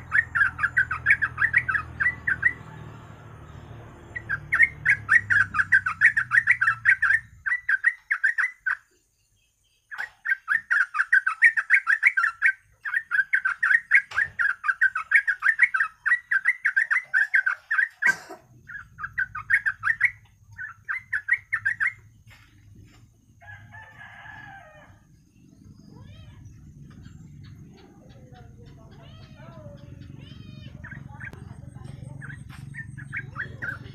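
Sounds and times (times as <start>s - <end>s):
bird singing chattering phrases: 0.0s - 23.0s, 25.2s - 33.9s.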